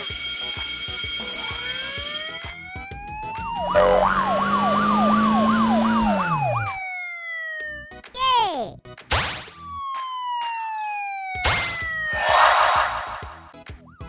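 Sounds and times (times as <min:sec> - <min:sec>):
cartoon siren wail: 0:02.1 - 0:08.6, 0:09.8 - 0:13.5
low hum: 0:03.5 - 0:06.8.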